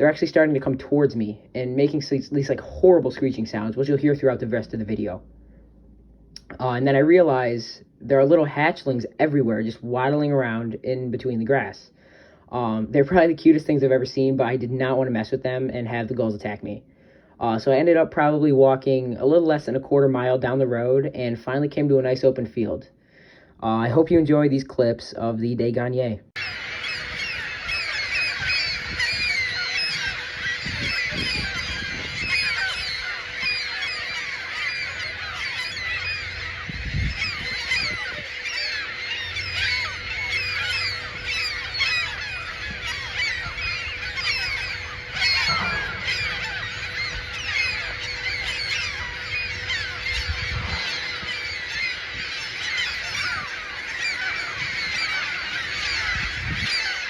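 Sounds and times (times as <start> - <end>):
gulls screeching in chorus: 0.0 - 6.0, 26.4 - 57.0.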